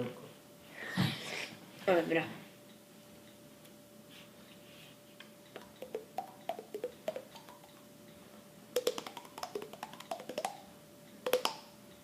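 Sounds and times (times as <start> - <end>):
mouth percussion pops and clicks: 5.5 - 7.8, 8.8 - 11.8.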